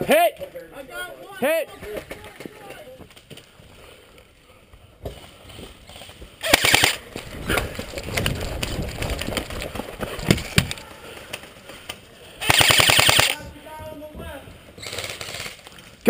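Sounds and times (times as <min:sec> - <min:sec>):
airsoft rifle firing: 0:06.4 - 0:07.0, 0:12.4 - 0:13.4.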